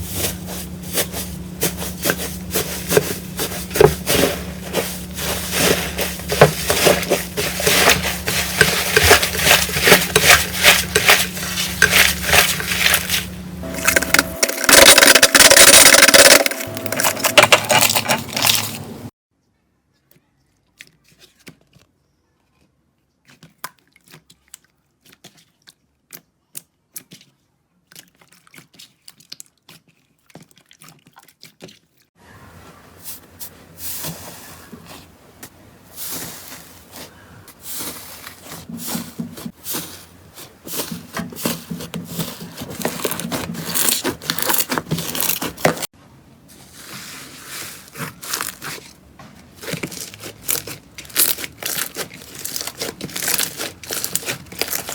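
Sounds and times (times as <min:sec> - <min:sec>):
slime crackling and crunching: 0:00.0 - 0:18.8, 0:41.5 - 0:45.9, 0:46.8 - 0:54.9.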